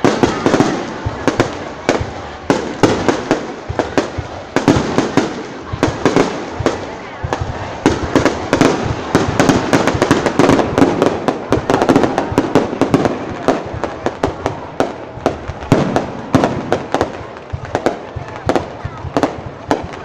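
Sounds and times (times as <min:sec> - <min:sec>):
fireworks bangs and crackles: 0:00.0 - 0:20.0.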